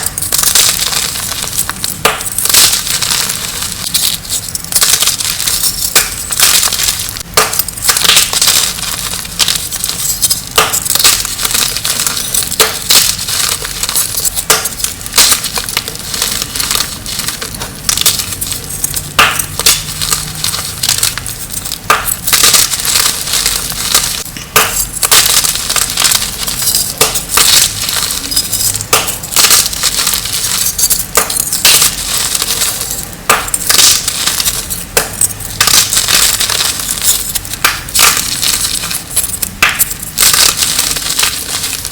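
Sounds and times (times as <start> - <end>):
chalk being crushed: 0.0 - 41.9.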